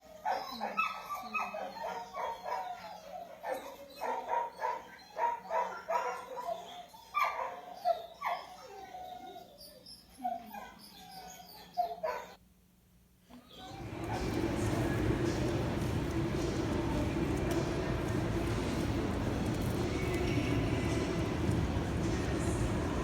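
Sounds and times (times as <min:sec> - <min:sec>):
dog barking and whining: 0:00.0 - 0:12.4.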